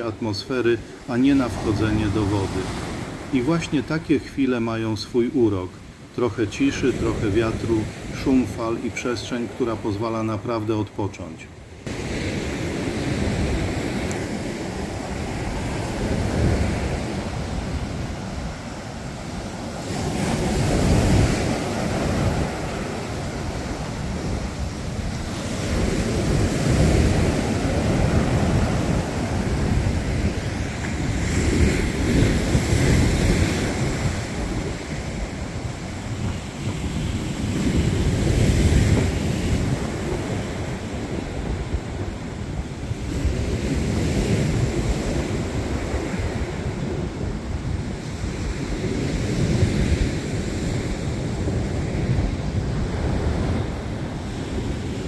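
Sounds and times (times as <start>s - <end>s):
surf breaking on shore: 0.0s - 55.0s
wind buffeting microphone: 11.8s - 55.0s.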